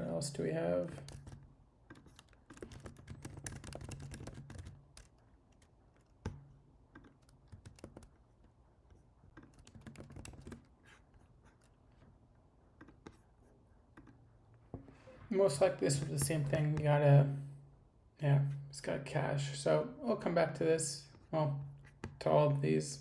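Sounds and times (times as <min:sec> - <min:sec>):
computer keyboard typing: 0:00.9 - 0:10.8.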